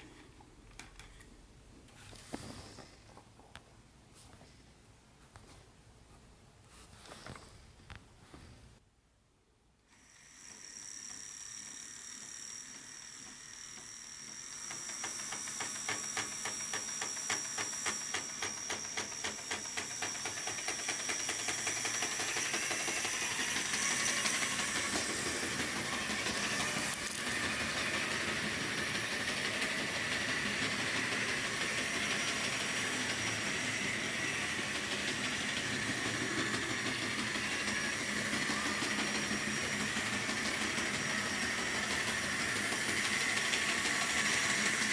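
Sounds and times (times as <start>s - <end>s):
model train motor whine: 9.9s - 44.9s
train wheels clicking: 12.8s - 44.9s.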